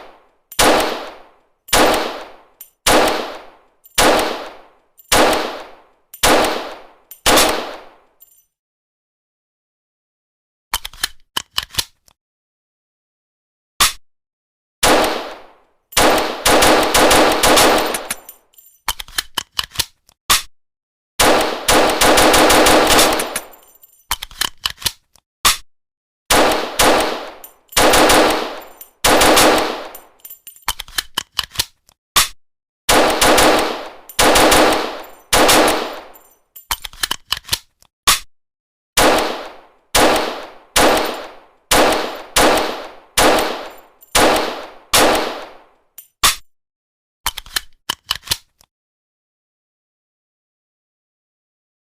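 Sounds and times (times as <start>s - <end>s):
pistol shots: 0.0s - 8.0s, 14.8s - 18.2s, 21.2s - 23.6s, 26.3s - 30.2s, 32.9s - 36.3s, 39.0s - 45.7s.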